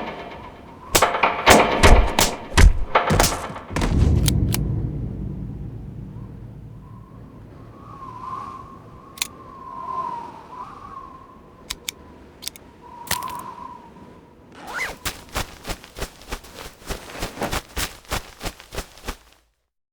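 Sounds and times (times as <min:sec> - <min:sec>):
sharp hits and clicks: 0:00.0 - 0:09.3
quick running footsteps: 0:01.0 - 0:04.4, 0:14.8 - 0:19.4
faint wavering tone: 0:04.2 - 0:09.2.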